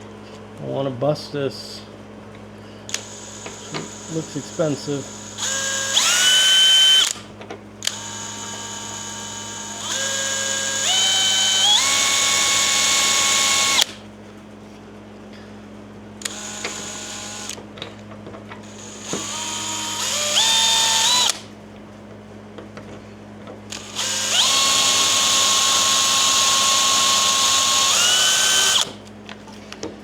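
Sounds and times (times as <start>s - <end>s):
power drill motor whine: 2.9s - 14.0s, 16.2s - 17.6s, 18.6s - 21.5s, 23.7s - 29.0s.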